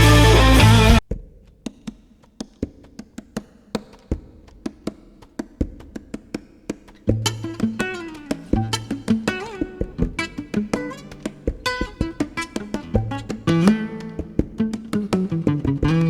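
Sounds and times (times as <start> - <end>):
electric guitar rock music: 0.0 - 1.0, 7.5 - 16.0
plucked guitar music: 0.0 - 1.0, 7.1 - 16.0.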